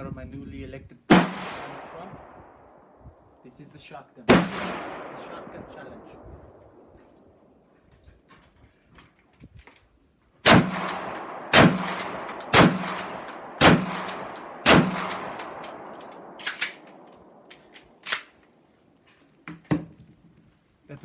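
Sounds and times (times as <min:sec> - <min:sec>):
shotgun blasts echoing: 0:01.1 - 0:03.0, 0:04.3 - 0:07.2, 0:10.4 - 0:18.2
light gun clicks: 0:10.5 - 0:18.5.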